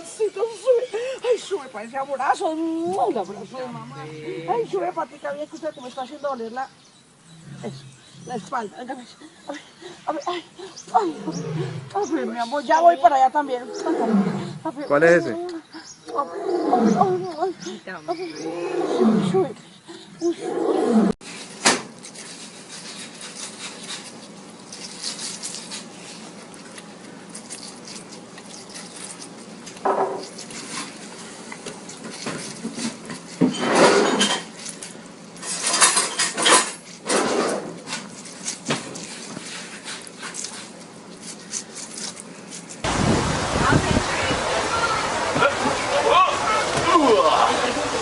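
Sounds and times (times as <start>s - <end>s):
animal calling: 7.2s - 21.2s.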